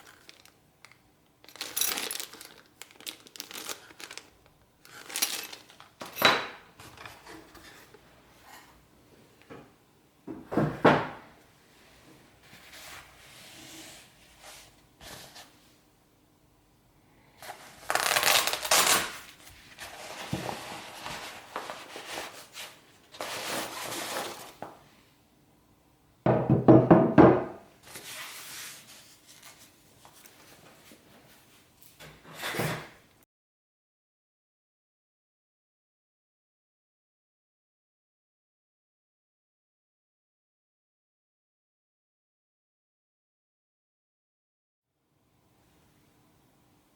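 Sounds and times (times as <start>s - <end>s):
packaging rustling: 0.0s - 6.3s, 17.5s - 20.3s.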